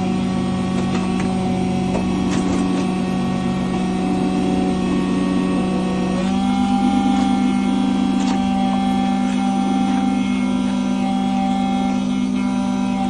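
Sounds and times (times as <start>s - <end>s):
key-cutting machine humming: 0.0s - 13.0s.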